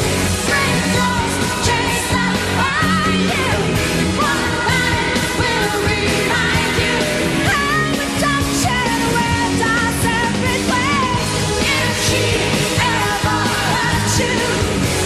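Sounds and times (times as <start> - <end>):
band playing: 0.0 - 15.0
woman singing pop song: 0.4 - 15.0.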